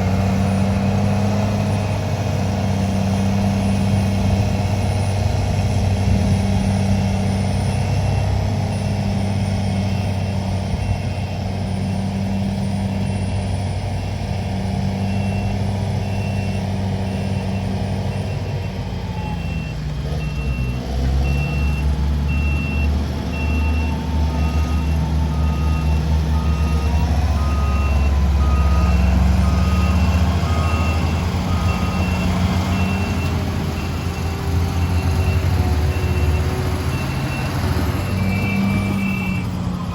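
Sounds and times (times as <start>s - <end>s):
heavy diesel machinery: 0.0s - 39.9s
reversing alarm beeping: 14.4s - 39.9s.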